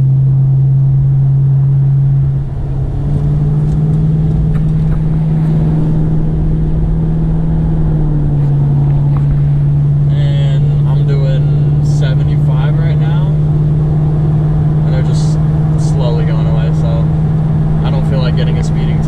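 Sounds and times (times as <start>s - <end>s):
car engine droning: 0.0s - 19.0s
road rumble: 0.0s - 19.0s.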